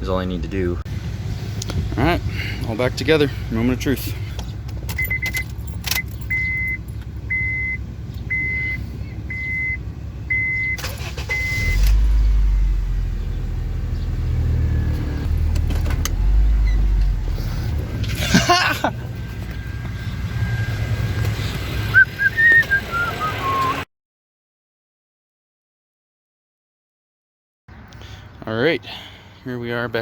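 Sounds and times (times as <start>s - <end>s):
car engine starting and running: 0.1s - 23.8s
keys jangling: 4.7s - 7.0s
car warning chime beeping: 5.0s - 12.8s.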